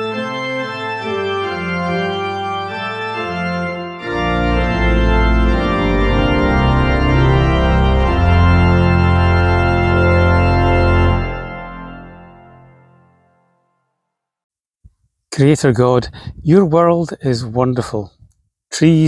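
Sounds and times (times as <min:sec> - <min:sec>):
deep organ bass notes: 0:00.0 - 0:13.2
organ playing chords: 0:00.0 - 0:13.7.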